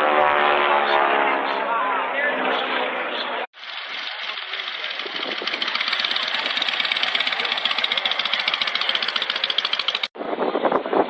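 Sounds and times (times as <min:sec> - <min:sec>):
engine running: 0:03.6 - 0:10.2.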